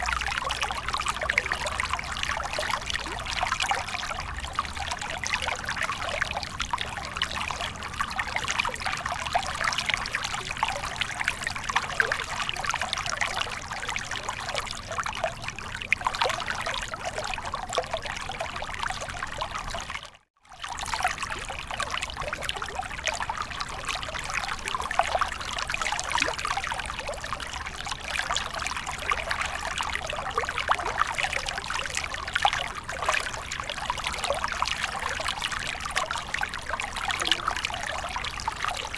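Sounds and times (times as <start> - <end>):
stream flowing over rocks: 23.0 - 38.9.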